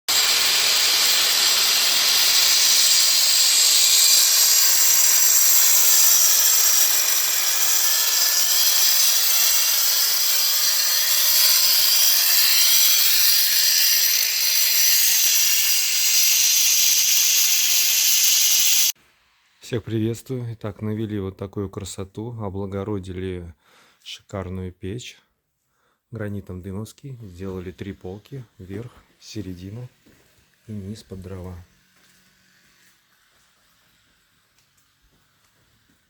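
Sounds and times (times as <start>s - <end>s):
power tool high hiss: 0.1s - 19.6s, 27.0s - 36.0s.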